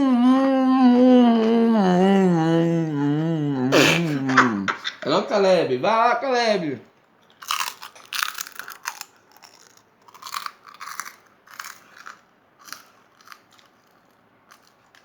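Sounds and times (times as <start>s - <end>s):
person chewing crunchy food: 7.3s - 15.0s.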